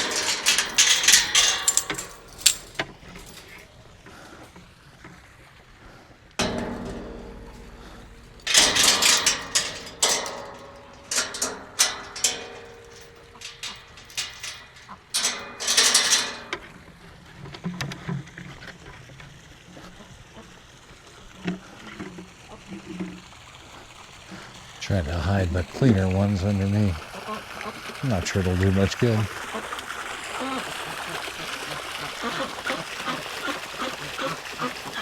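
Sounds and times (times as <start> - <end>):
clattering knocks and rattles: 0.0 - 3.7, 6.4 - 18.0.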